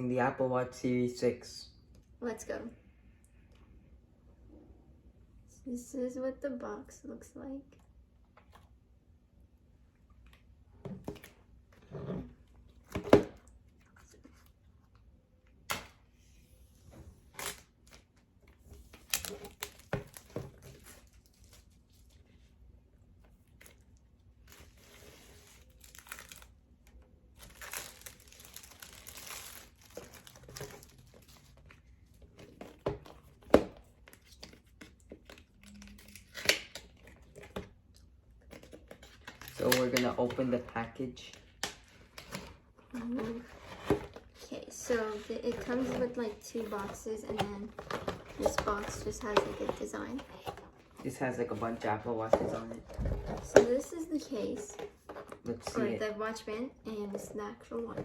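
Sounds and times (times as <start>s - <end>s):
wrapping crinkling and tearing: 23.4s - 26.6s, 27.3s - 31.8s, 38.5s - 40.2s.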